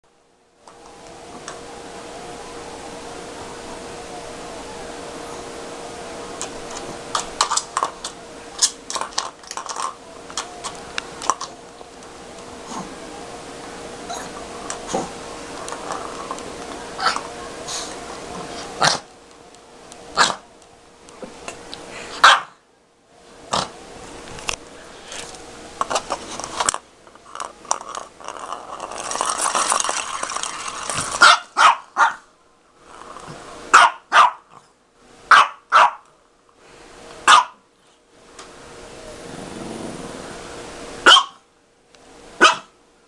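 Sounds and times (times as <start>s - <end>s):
rough noisy sound: 0.1s - 22.2s, 23.2s - 33.8s, 37.8s - 41.1s
dog barking: 20.2s - 20.4s, 22.2s - 22.6s, 31.2s - 32.2s, 33.7s - 34.6s, 35.3s - 36.0s, 37.3s - 37.6s, 41.0s - 41.4s, 42.4s - 42.7s.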